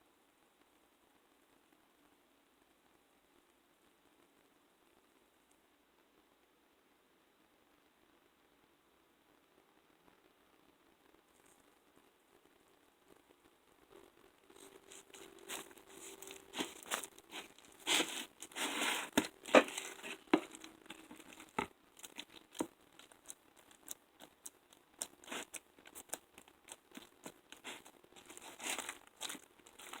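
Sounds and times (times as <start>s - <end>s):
slime squelching and popping: 14.6s - 30.0s.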